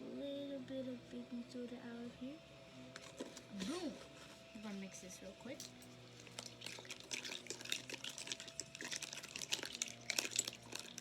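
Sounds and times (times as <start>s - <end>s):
slime stirred wet squishes: 5.7s - 11.0s.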